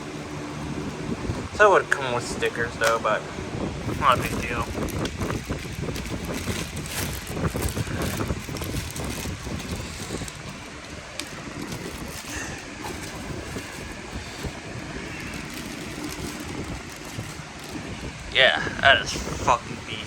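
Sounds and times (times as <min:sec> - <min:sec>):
microphone handling rumble: 0:00.6 - 0:20.0
packaging rustling and knocking: 0:03.9 - 0:18.0.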